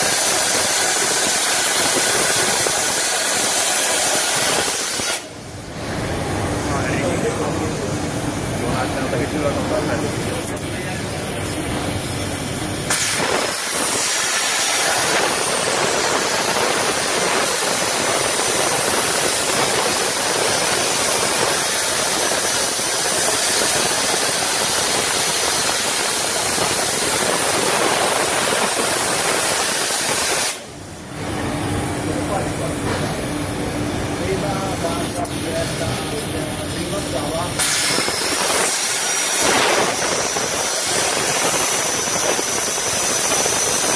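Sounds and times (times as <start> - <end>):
machine hissing: 0.0 - 43.9.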